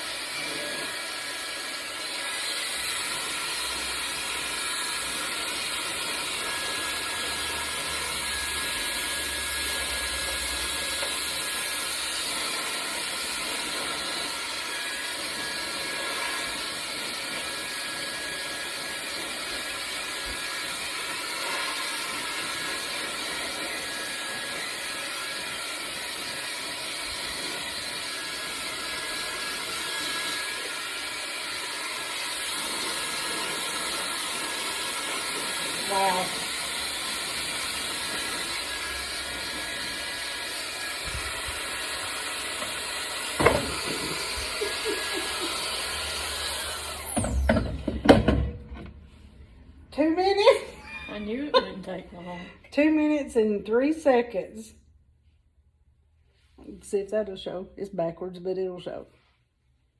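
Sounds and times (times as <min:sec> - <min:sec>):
hair dryer running: 0:00.0 - 0:54.5
motor whine: 0:22.2 - 0:48.8.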